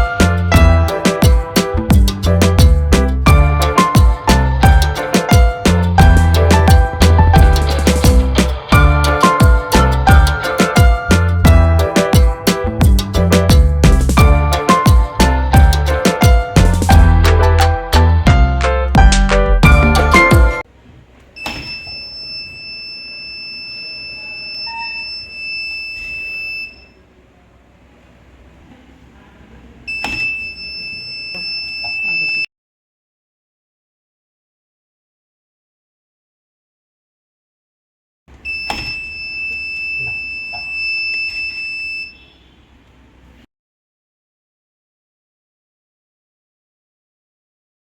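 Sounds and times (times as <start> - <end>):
shrill alarm buzzer tone: 21.4 - 27.0, 29.9 - 32.5, 38.4 - 42.5
high-pitched alarm buzzer: 38.5 - 42.4.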